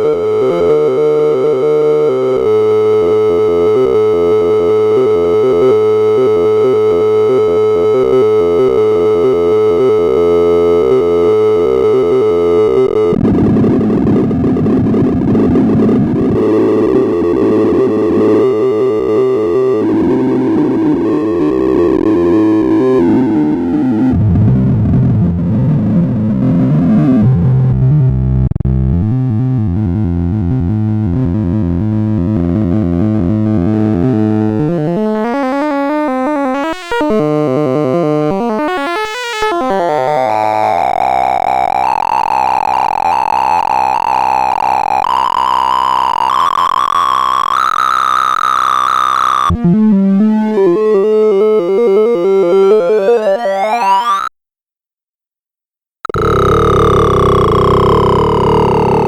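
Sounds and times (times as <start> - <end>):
synthesized sweeping tones: 56.1 - 59.0.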